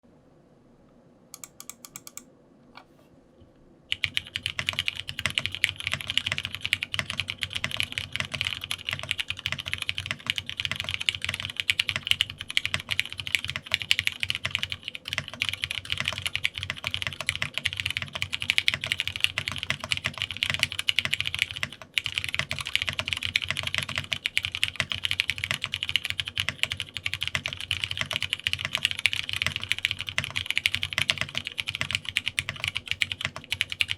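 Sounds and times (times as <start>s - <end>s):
typing on mechanical keyboard: 1.4s - 2.2s, 3.9s - 33.9s.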